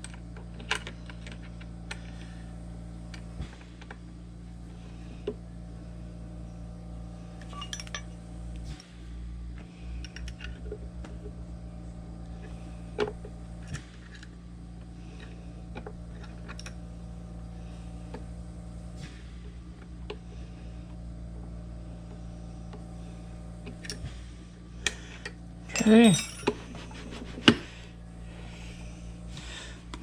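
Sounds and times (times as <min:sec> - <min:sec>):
steady low hum: 0:00.0 - 0:30.0
metal tools clinking: 0:07.5 - 0:08.2, 0:25.7 - 0:27.8.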